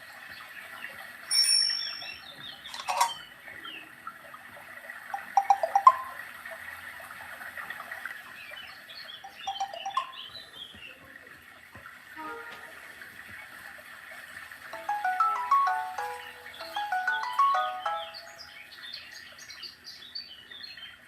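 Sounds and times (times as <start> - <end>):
phone ringtone chirps and chimes: 1.3 - 3.2, 5.2 - 6.2, 9.3 - 10.2, 14.8 - 18.7.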